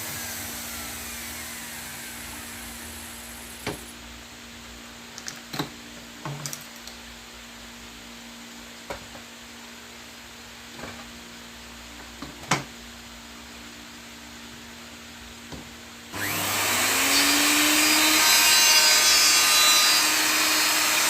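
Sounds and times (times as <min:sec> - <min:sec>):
wood router spinning down: 0:00.0 - 0:03.9, 0:16.2 - 0:21.0.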